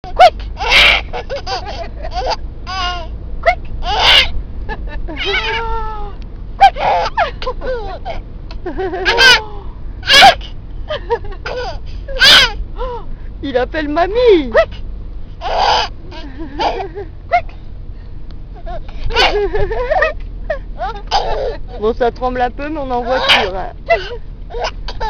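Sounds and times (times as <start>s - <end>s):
baby laughing: 0.1s - 3.1s, 3.8s - 4.3s, 5.0s - 5.8s, 6.6s - 10.4s, 11.2s - 12.6s, 15.4s - 17.4s, 18.6s - 21.7s.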